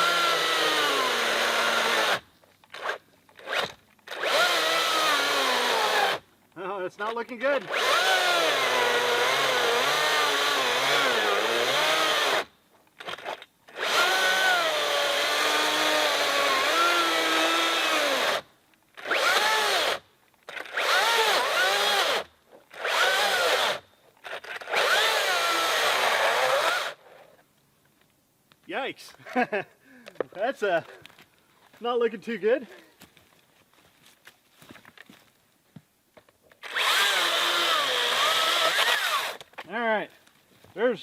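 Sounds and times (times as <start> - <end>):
chainsaw cutting log: 0.0 - 6.2, 7.6 - 27.0, 36.6 - 39.5.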